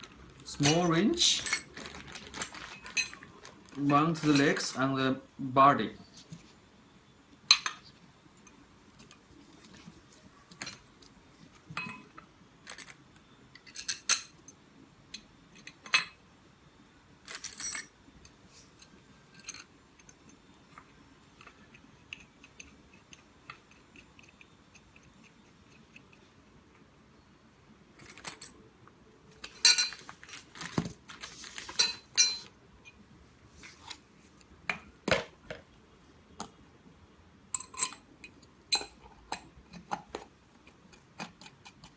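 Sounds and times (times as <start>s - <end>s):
wrench and screws clinking on metal: 31.8s - 32.5s.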